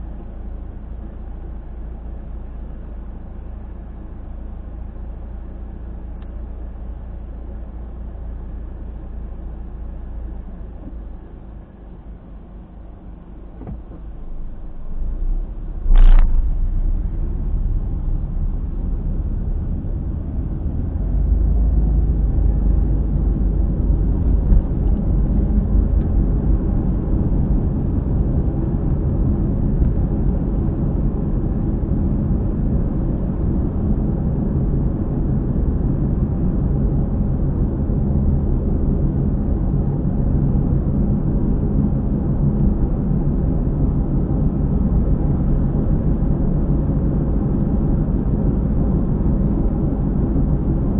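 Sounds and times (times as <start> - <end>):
road and tyre rumble: 0.0 - 50.9
sharp thump: 15.8 - 16.7.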